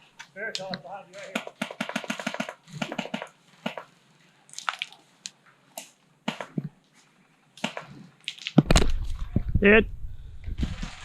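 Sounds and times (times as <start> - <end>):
microphone handling rumble: 8.6 - 11.0.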